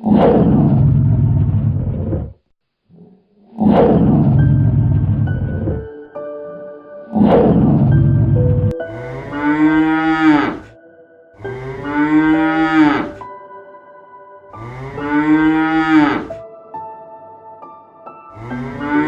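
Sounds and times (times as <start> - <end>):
soft background music: 4.4 - 19.0
cow mooing: 8.9 - 10.8, 11.5 - 13.2, 14.6 - 16.4.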